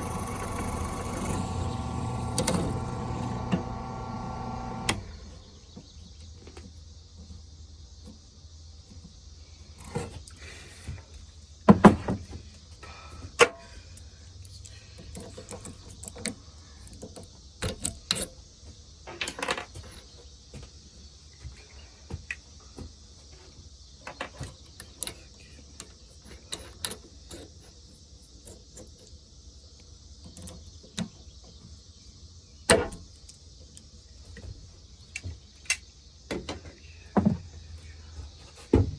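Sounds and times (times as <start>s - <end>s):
steady low hum: 0.0s - 5.7s.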